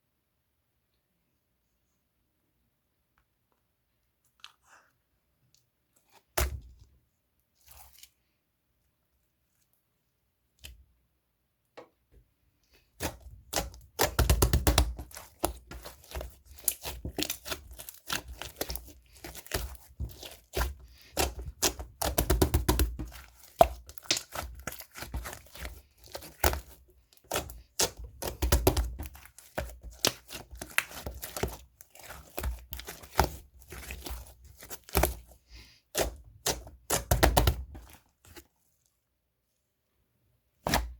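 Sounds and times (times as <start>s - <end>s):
slime crackling and popping: 13.0s - 35.3s.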